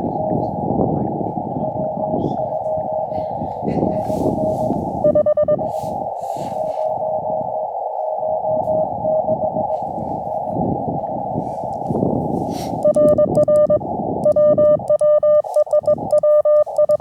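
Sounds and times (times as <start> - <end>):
radio receiver hiss: 0.1 - 17.0
morse code tone: 3.8 - 10.5, 11.1 - 17.0.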